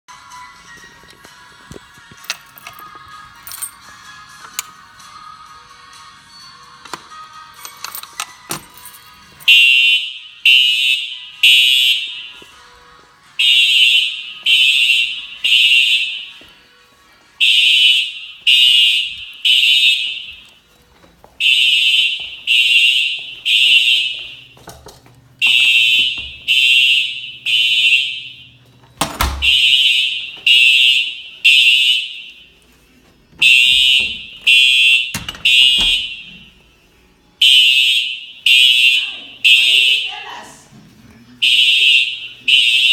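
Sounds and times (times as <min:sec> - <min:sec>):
fire alarm horn blasts: 0:09.4 - 0:12.5, 0:13.4 - 0:16.4, 0:17.4 - 0:20.7, 0:21.4 - 0:24.6, 0:25.4 - 0:32.7, 0:33.4 - 0:40.4, 0:41.4 - 0:42.9.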